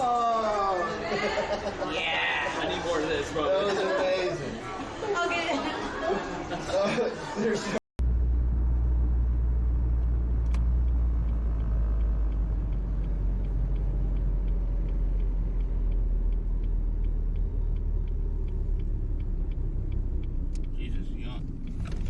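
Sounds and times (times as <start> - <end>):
car rumble on the move: 8.0 - 22.0
light regular ticking: 9.6 - 22.0.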